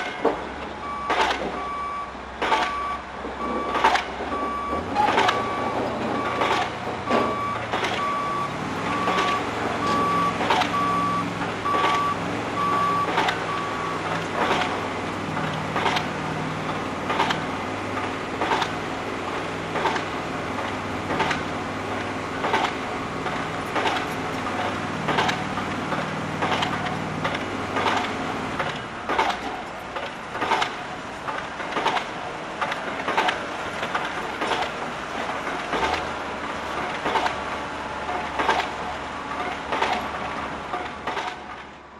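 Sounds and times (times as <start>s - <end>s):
heavy vehicle engine running: 0.0s - 41.9s
reversing alarm beeping: 0.8s - 14.7s.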